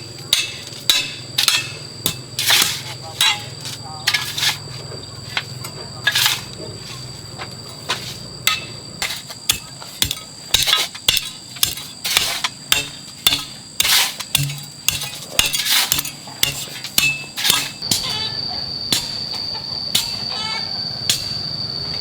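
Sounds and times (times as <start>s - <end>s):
steady high-pitched tone: 16.0s - 22.0s.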